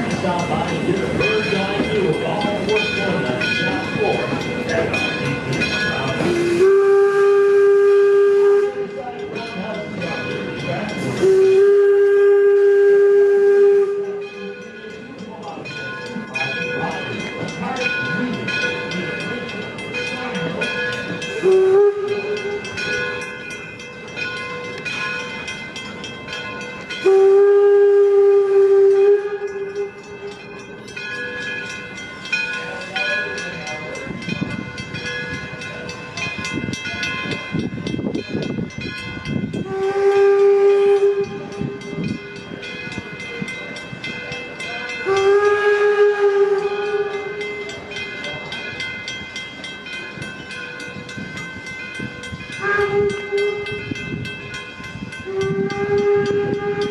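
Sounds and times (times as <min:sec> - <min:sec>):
running train noise: 0:00.0 - 0:56.9
steam whistle blasts: 0:06.2 - 0:09.0, 0:11.0 - 0:14.5, 0:21.4 - 0:22.9, 0:27.0 - 0:30.4, 0:39.6 - 0:41.8, 0:45.0 - 0:47.6, 0:52.5 - 0:53.9, 0:55.2 - 0:56.9.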